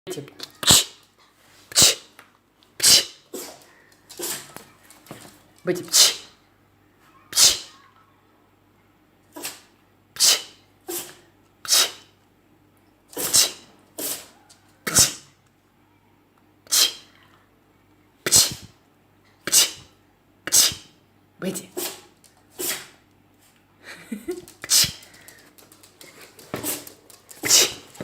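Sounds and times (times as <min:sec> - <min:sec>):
dog sneezing: 0:00.6 - 0:01.1, 0:01.7 - 0:02.2, 0:02.8 - 0:04.6, 0:05.8 - 0:06.4, 0:07.3 - 0:07.8, 0:09.3 - 0:12.2, 0:13.1 - 0:14.3, 0:14.9 - 0:15.3, 0:16.7 - 0:17.2, 0:18.2 - 0:18.8, 0:19.4 - 0:21.0, 0:21.7 - 0:23.0, 0:24.6 - 0:25.1, 0:26.5 - 0:28.0.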